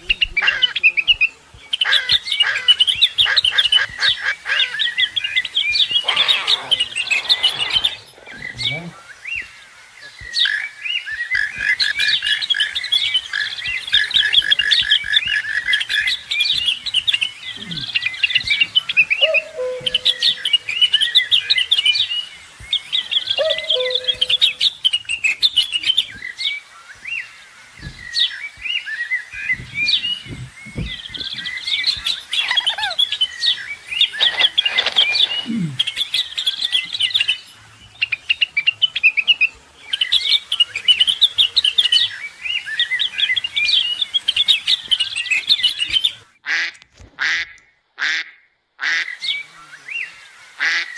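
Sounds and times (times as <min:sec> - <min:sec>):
small birds chirping: 0:00.0 - 0:48.2
downward-sliding bird call: 0:05.9 - 0:08.9, 0:19.1 - 0:20.6, 0:23.4 - 0:24.7, 0:34.1 - 0:36.0.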